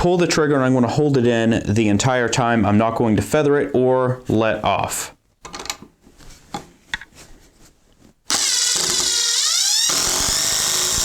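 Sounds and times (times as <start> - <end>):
impact driver driving into wood: 8.3 - 11.0.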